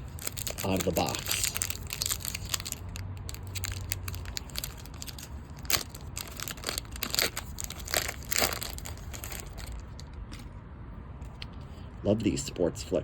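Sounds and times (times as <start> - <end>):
foil wrapper crinkling and tearing: 0.0 - 10.0.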